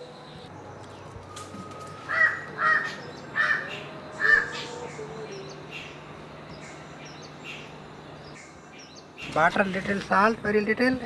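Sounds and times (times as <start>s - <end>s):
bird calling: 2.0s - 9.4s.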